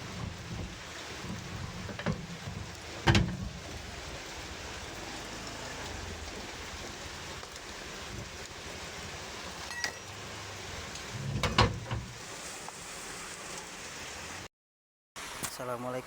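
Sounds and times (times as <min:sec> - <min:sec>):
low rumble: 0:00.0 - 0:09.5
steady rain: 0:00.0 - 0:14.5.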